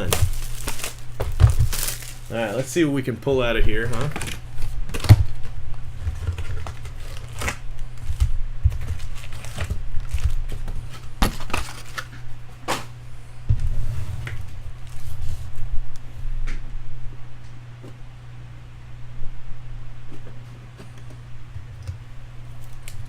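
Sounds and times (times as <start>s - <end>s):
taps and rustles of handling: 0.0s - 2.9s, 3.7s - 13.0s
foil wrapper crinkling: 0.0s - 3.0s, 3.7s - 12.4s
steady low hum: 0.0s - 23.0s.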